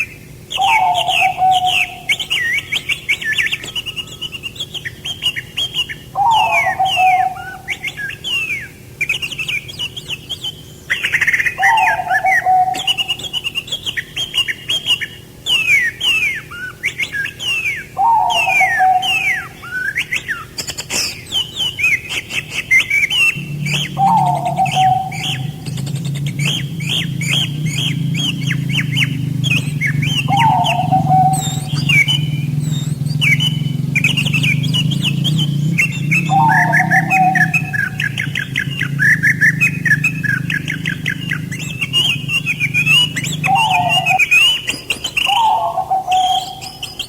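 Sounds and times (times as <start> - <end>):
lower bird call: 0.0 - 47.0
songbirds chirping: 0.0 - 47.0.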